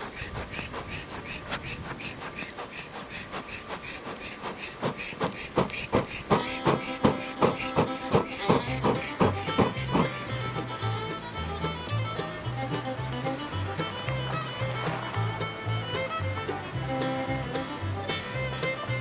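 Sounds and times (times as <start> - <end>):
hand air blower pumping: 0.0 - 12.9.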